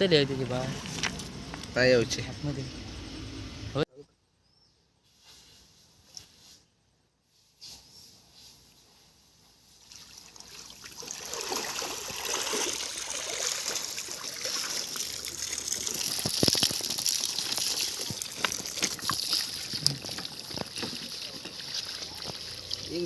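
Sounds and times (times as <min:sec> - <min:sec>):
water gushing and splashing: 0:10.2 - 0:23.0.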